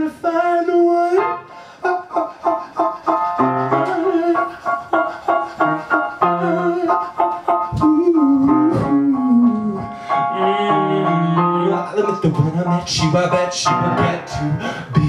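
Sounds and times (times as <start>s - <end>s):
piano playing repeated chords: 0.0s - 15.0s
person singing wordless note: 7.7s - 12.2s.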